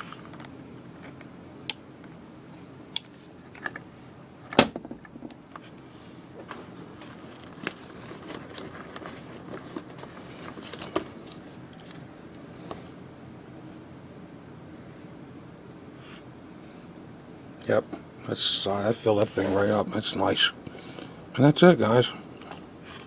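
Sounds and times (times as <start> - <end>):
small tools clicking and clinking: 7.0 - 12.0.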